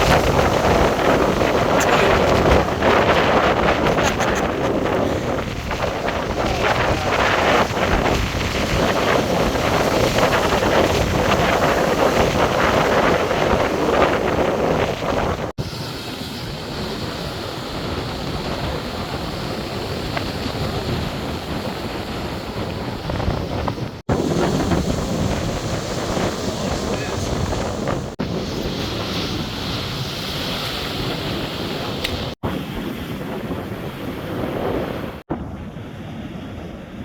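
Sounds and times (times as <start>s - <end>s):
surf crashing on beach: 0.0s - 37.0s
wind buffeting microphone: 0.0s - 37.0s.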